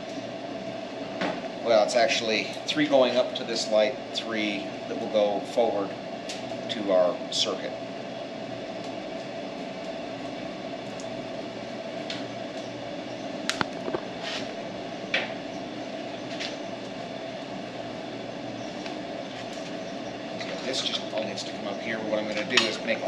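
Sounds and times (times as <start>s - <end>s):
machine humming: 0.0s - 23.0s.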